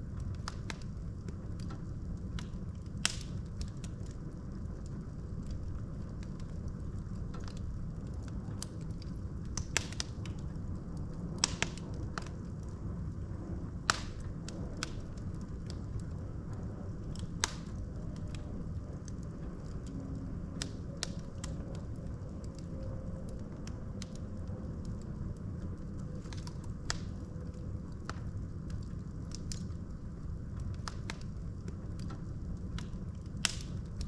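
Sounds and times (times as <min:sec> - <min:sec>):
logs crackling and popping: 0:00.0 - 0:34.0
rumble of flames: 0:00.0 - 0:34.0.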